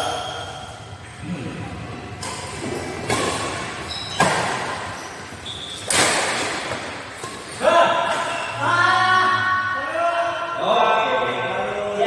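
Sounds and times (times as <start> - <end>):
rackets hitting shuttlecock: 2.2 - 8.5.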